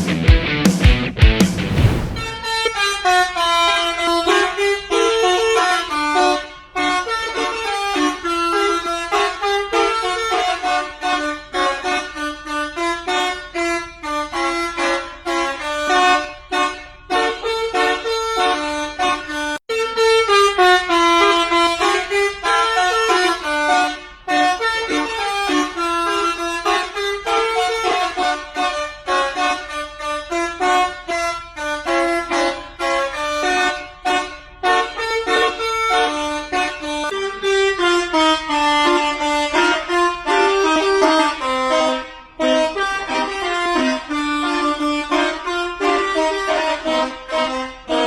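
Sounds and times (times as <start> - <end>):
loud rock music with drums: 0.0 - 2.4
multi-tone air horn melody: 1.8 - 48.0.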